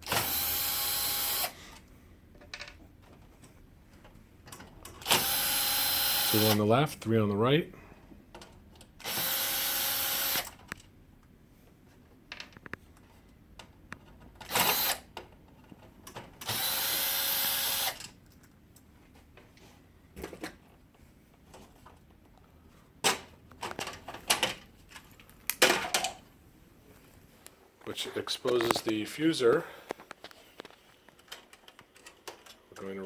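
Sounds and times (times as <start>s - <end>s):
power screwdriver whirring: 0.0s - 1.6s, 5.0s - 6.6s, 9.0s - 10.6s, 14.5s - 15.1s, 16.4s - 18.0s.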